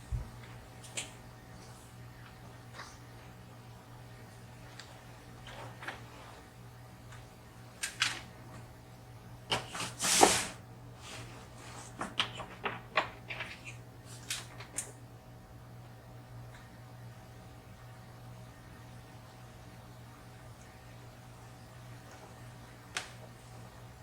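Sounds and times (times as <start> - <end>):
faint steady hum: 0.0 - 24.0
rustling scrape: 9.7 - 12.0.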